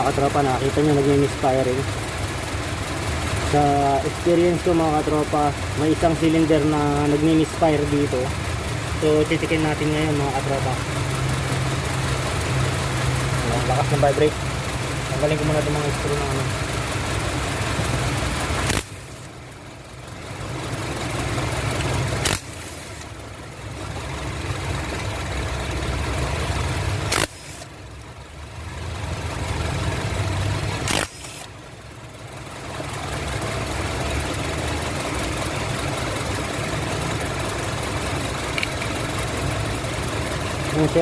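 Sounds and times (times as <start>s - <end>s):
car engine idling roughly: 0.0s - 41.0s
sharp clicks: 18.6s - 19.1s, 21.7s - 23.1s, 27.1s - 27.7s, 30.8s - 31.6s, 38.5s - 39.0s.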